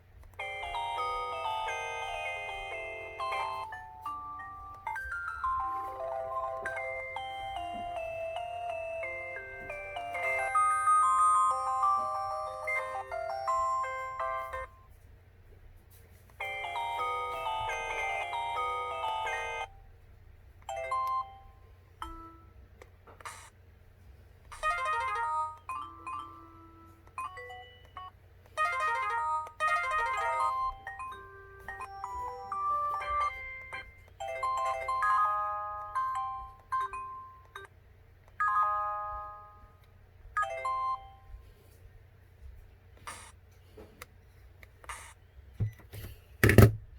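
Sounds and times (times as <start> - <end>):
electronic ringtone melody: 0.4 - 14.8, 16.4 - 19.8, 24.5 - 37.7, 38.4 - 39.7.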